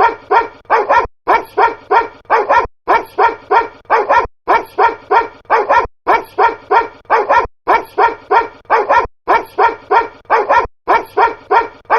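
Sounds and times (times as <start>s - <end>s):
looped dog barks: 0.0s - 11.9s.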